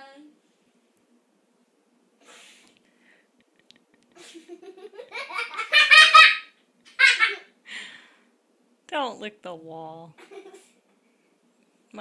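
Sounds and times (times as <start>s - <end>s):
person laughing: 4.2s - 7.5s.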